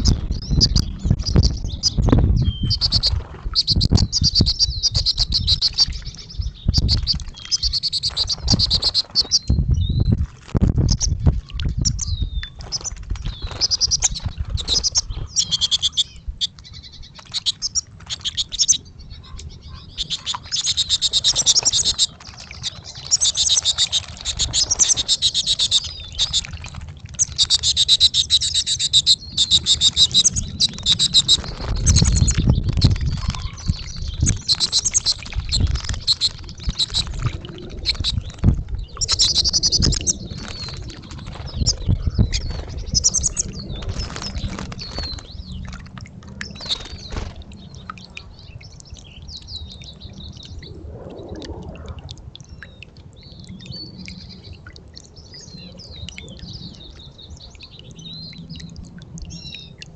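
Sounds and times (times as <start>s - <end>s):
low rumbles: 0.0s - 7.1s, 30.2s - 54.6s
finches twittering: 27.2s - 45.7s.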